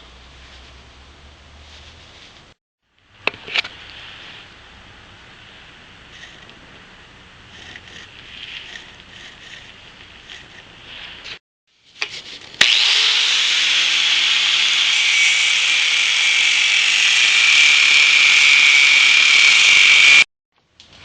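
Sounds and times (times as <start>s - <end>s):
power tool cutting: 12.6s - 20.3s.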